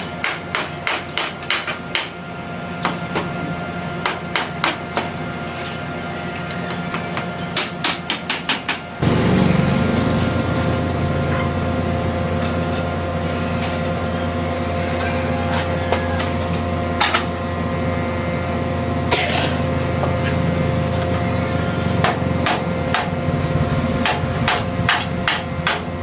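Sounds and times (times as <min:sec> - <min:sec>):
machine humming: 0:09.0 - 0:26.0.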